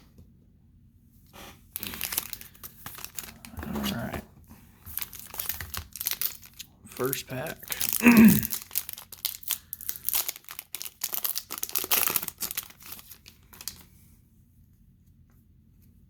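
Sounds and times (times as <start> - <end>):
wrapper tearing and crinkling: 1.8 - 4.2, 4.9 - 13.8.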